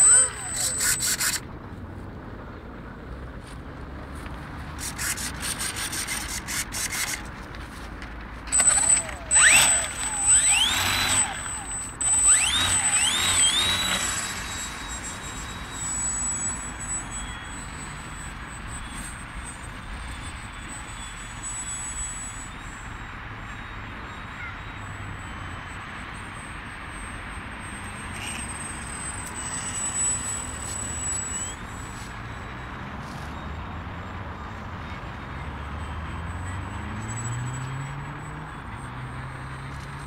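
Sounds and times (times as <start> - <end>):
light rapid clicking and rubbing: 0.0 - 1.4, 4.8 - 11.2
model plane motor whine: 0.0 - 1.4, 4.8 - 40.0.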